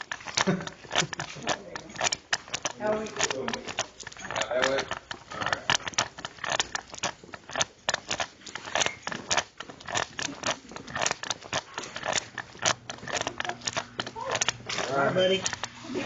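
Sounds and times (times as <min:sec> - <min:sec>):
gear clicking and knocking: 0:00.0 - 0:16.0.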